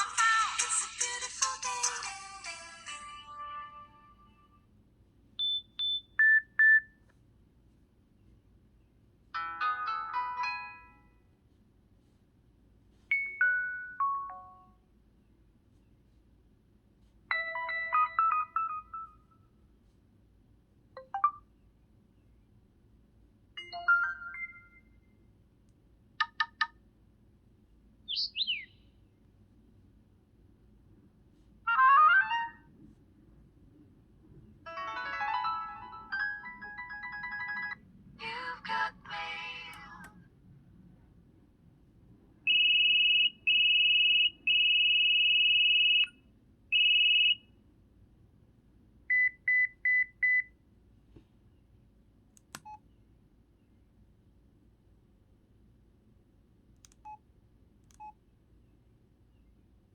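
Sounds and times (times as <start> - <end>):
phone ringtones and alert tones: 9.4 - 11.1, 13.1 - 14.7, 17.3 - 19.4, 21.0 - 21.4, 23.6 - 25.0, 34.7 - 37.8, 42.5 - 46.1, 46.8 - 47.4.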